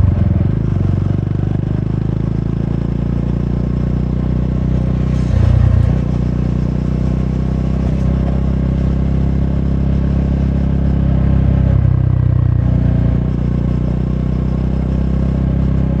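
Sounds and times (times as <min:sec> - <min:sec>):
motorcycle engine idling: 0:00.0 - 0:04.8.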